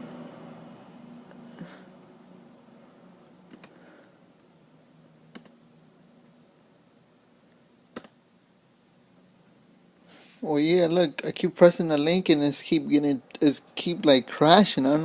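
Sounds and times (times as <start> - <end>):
faint low hum: 0.0 - 15.0
computer mouse clicks: 3.5 - 3.8, 5.3 - 5.6, 7.9 - 8.2.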